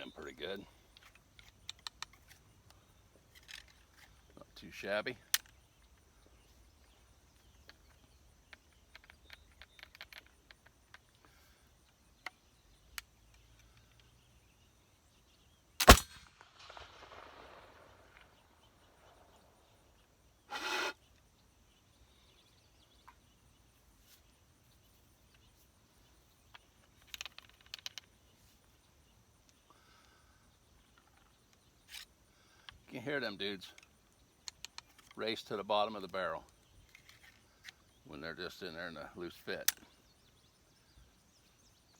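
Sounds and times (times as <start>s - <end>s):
brief burst: 15.8s - 18.1s
pistol shot with echo: 15.8s - 18.5s.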